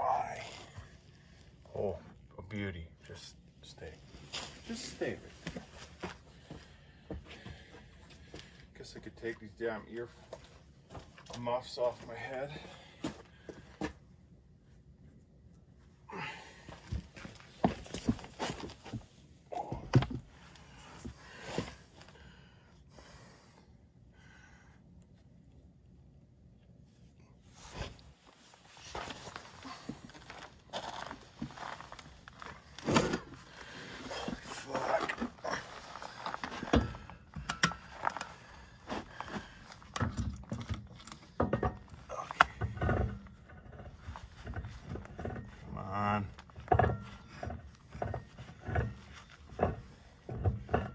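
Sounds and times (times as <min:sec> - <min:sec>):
knocks and handling clatter: 0:27.7 - 0:50.9
metal parts and tools clanking: 0:31.4 - 0:38.4, 0:39.8 - 0:45.6, 0:46.3 - 0:50.9.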